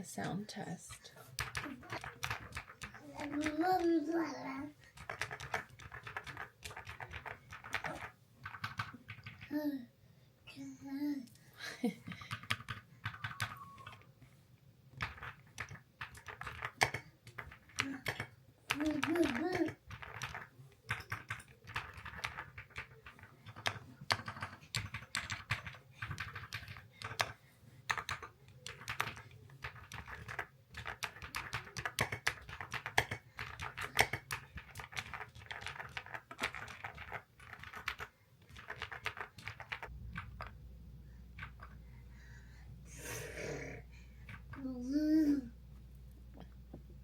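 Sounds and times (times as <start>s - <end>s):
low steady hum: 39.9s - 47.0s.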